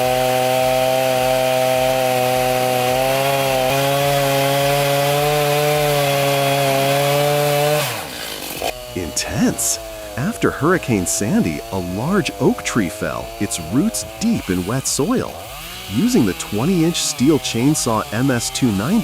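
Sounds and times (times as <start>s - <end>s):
chainsaw cutting wood: 0.0s - 19.0s.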